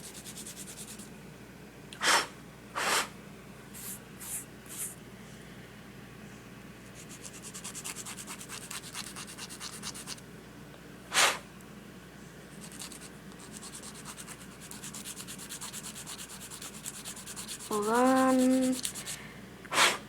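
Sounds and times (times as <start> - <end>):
loud puff of noise: 2.0 - 3.1, 11.1 - 11.4, 19.7 - 20.0
nail file rasping on plastic: 7.0 - 10.2, 12.6 - 19.1.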